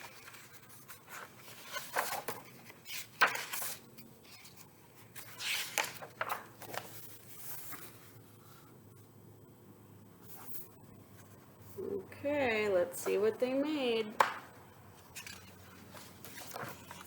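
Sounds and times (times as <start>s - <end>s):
book pages rustling: 0.0s - 8.6s, 14.9s - 17.0s.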